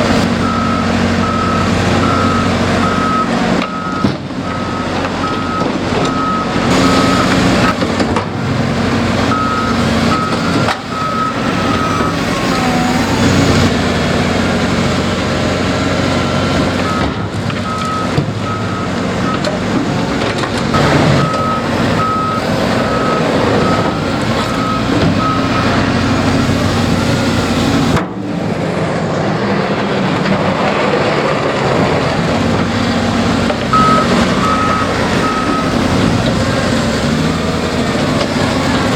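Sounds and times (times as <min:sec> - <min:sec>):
diesel construction machinery running: 0:00.0 - 0:38.9
reversing alarm beeping: 0:00.2 - 0:07.8, 0:09.3 - 0:13.5, 0:16.2 - 0:19.5, 0:20.7 - 0:27.6, 0:33.7 - 0:37.5.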